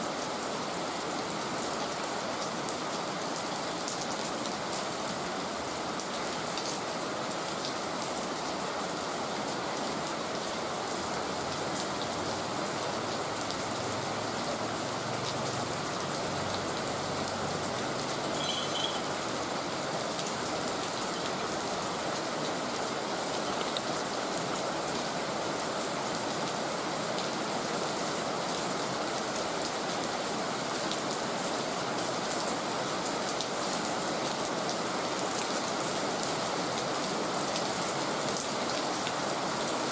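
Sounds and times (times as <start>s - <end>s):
heavy rain falling: 0.1s - 39.9s
faint high tone: 18.2s - 19.3s.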